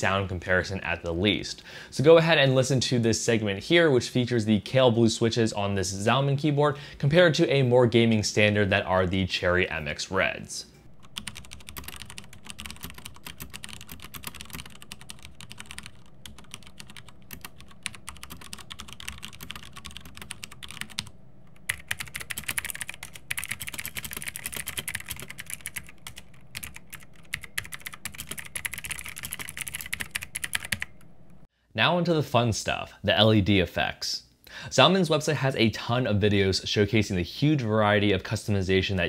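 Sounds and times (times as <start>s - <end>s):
typing on mechanical keyboard: 11.1s - 21.1s, 21.7s - 31.0s.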